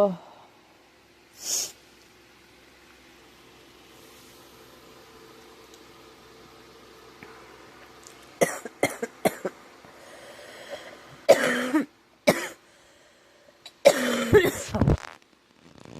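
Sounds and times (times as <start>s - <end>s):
girl coughing: 8.4s - 9.6s, 11.3s - 12.6s, 13.8s - 14.8s.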